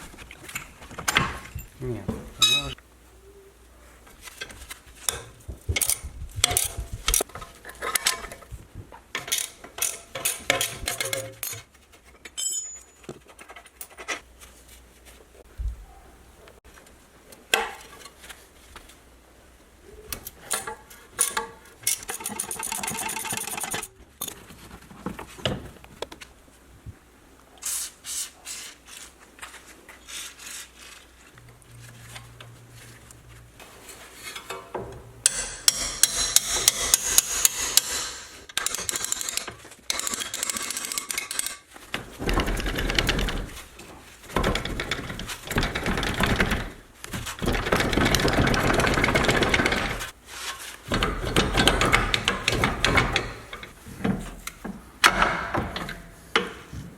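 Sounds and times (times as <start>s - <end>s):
hand tools scraping and clicking: 0.0s - 2.8s, 4.1s - 14.3s, 20.0s - 24.6s, 27.6s - 42.3s, 48.1s - 56.9s.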